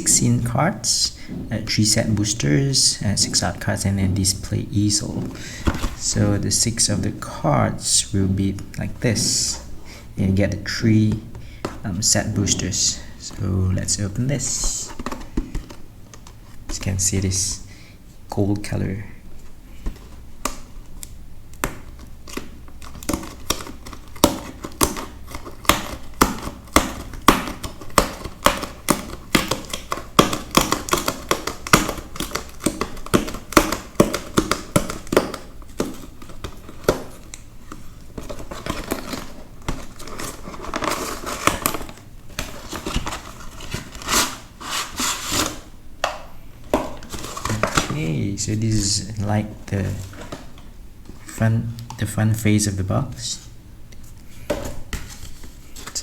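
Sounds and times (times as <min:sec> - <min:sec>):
packaging crinkled and torn: 0:47.0 - 0:48.2.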